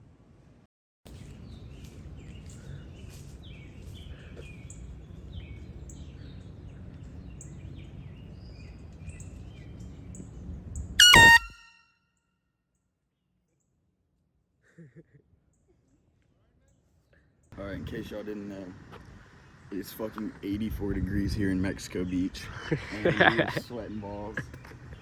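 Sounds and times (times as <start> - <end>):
birds chirping: 1.1 - 11.7, 15.5 - 25.0
air horn blast: 11.0 - 11.8.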